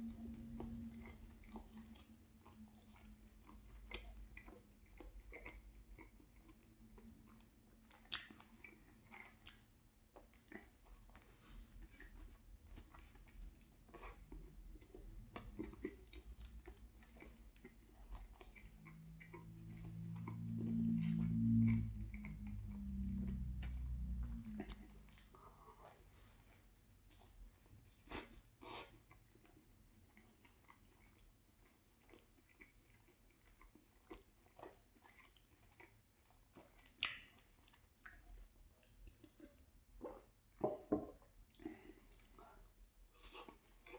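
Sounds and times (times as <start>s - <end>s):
steady low tone: 0.0s - 3.1s, 19.1s - 25.4s
close chewing: 0.0s - 43.9s
wet mouth clicks: 7.9s - 10.7s, 15.2s - 25.6s, 36.8s - 38.3s.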